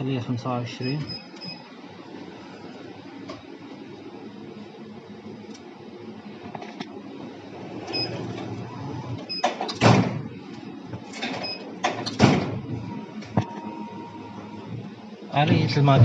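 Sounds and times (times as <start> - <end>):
machine hum: 0.0 - 16.0
sliding door on a track: 7.6 - 10.3.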